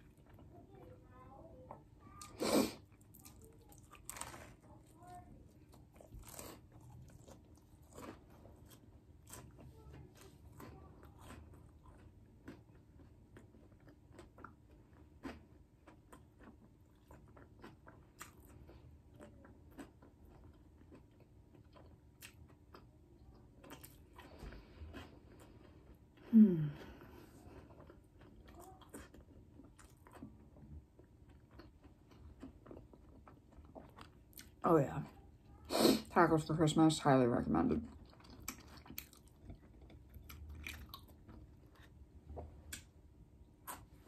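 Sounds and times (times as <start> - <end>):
person biting and chewing: 2.4 - 4.6, 5.8 - 18.5, 38.0 - 42.9.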